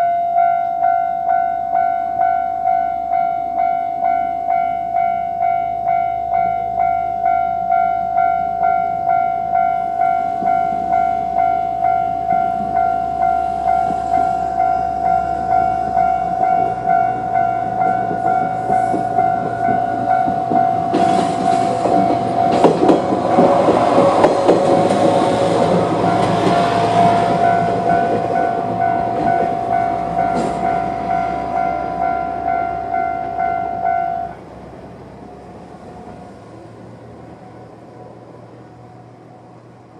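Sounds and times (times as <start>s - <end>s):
level crossing alarm ringing: 0.0s - 34.4s
diesel railcar passing: 0.0s - 39.9s
train wheels clattering: 10.2s - 33.7s.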